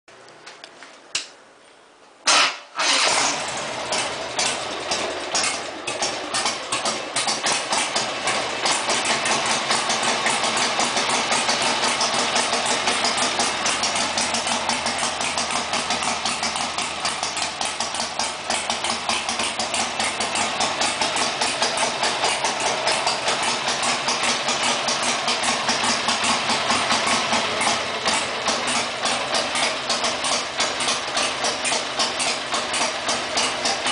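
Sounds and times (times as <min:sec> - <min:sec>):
engine starting and idling: 0:02.3 - 0:33.9.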